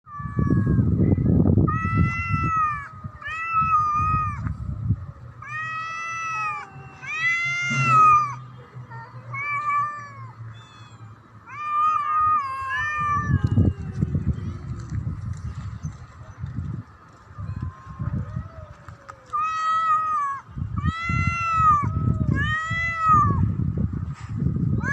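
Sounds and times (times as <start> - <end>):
low rumbling noise: 0.6 - 19.4
cat meowing loudly: 1.7 - 4.4, 5.4 - 8.4, 9.3 - 14.0, 17.4 - 23.5.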